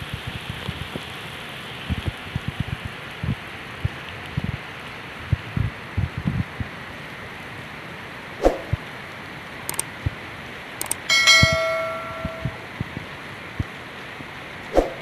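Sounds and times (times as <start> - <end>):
heavy rain: 0.0 - 15.0
drips and thumps: 1.8 - 4.6, 5.3 - 6.8
metal clang ringing: 11.1 - 12.7.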